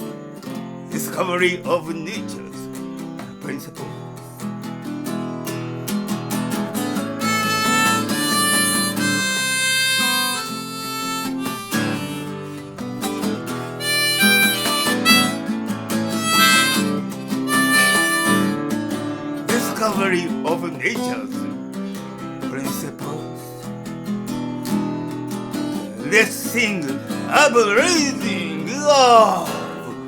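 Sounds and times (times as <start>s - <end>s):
strummed acoustic guitar: 0.0s - 30.0s
harmonica melody: 5.7s - 19.8s.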